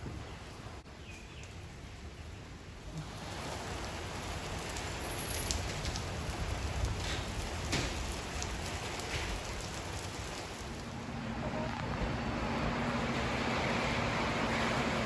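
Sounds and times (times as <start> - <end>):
steady rain: 0.0 - 15.0
low rumble: 10.9 - 14.7.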